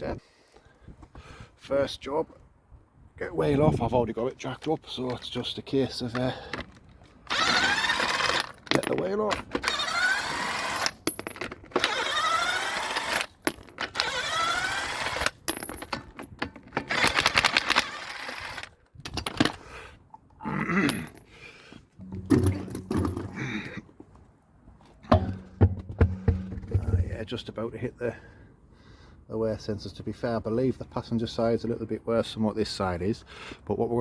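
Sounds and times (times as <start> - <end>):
impact wrench whining: 6.6 - 8.8, 9.4 - 18.7, 22.0 - 23.4, 25.1 - 27.1
metallic clinks and knocks: 10.9 - 11.8, 15.2 - 17.7, 20.9 - 21.3, 22.0 - 23.5, 25.1 - 27.1.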